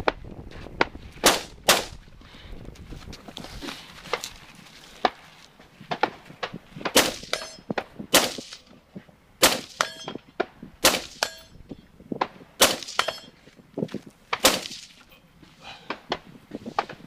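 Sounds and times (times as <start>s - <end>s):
rifle shots: 1.2s - 2.0s, 6.8s - 7.4s, 8.1s - 8.6s, 9.4s - 10.1s, 10.8s - 11.4s, 12.6s - 13.3s, 14.3s - 14.9s
steel target ringing: 7.2s - 7.7s, 9.6s - 10.2s, 11.0s - 11.6s, 12.8s - 13.3s.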